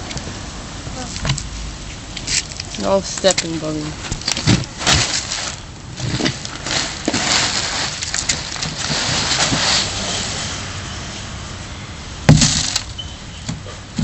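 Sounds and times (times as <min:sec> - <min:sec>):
sharp thump: 0:12.3 - 0:12.7.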